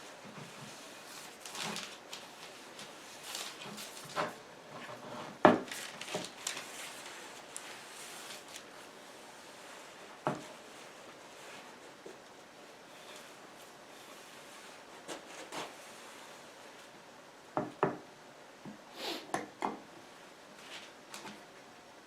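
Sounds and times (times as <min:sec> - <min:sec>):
faint rustling: 0:00.0 - 0:17.0.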